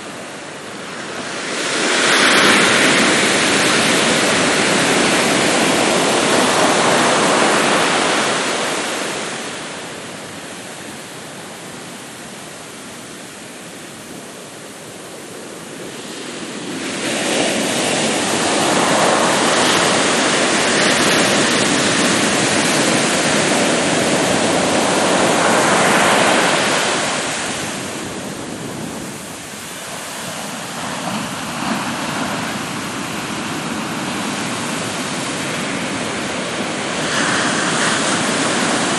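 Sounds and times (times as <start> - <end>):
ocean waves breaking on beach: 0.0 - 38.9.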